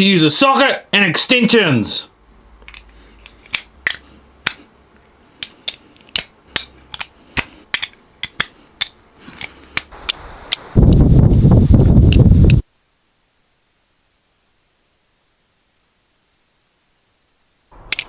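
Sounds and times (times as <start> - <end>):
socket ratchet clicking: 5.4 - 10.6.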